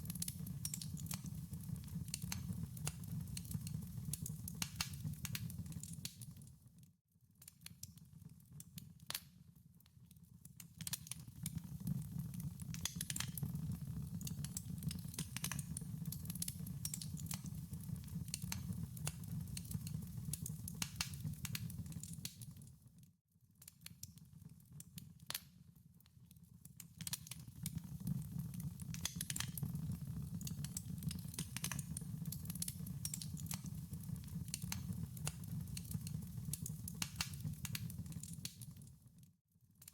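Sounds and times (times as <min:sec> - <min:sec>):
wood fire crackling: 0:00.0 - 0:06.3, 0:10.8 - 0:22.5, 0:27.0 - 0:38.9.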